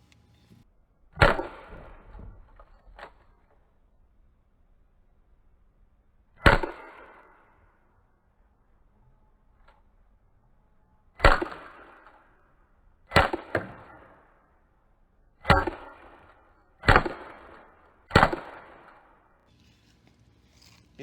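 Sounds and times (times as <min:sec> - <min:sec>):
airsoft gun shots: 0:01.2 - 0:03.2, 0:06.4 - 0:07.8, 0:11.2 - 0:12.4, 0:13.1 - 0:14.5, 0:15.4 - 0:19.3.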